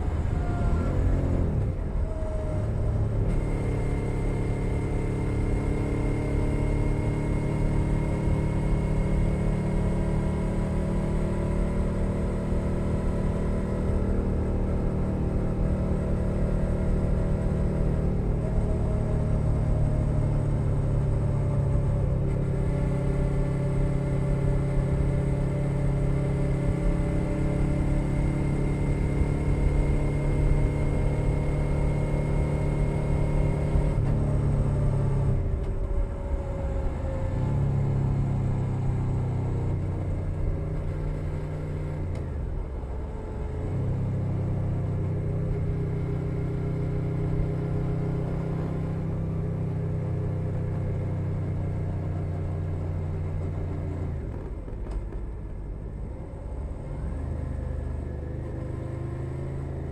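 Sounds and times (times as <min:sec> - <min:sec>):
motorcycle engine riding: 0:02.9 - 0:38.1.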